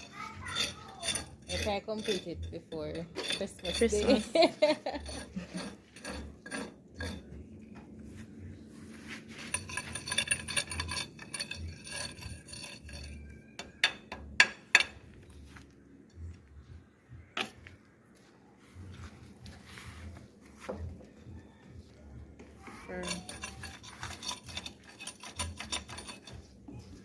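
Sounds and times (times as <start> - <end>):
hard objects clinking: 0.0 - 7.4, 9.4 - 15.1, 22.9 - 26.9.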